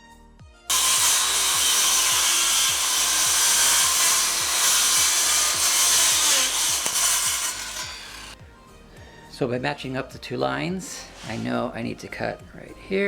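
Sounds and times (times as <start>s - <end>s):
power saw cutting wood: 0.7s - 8.4s.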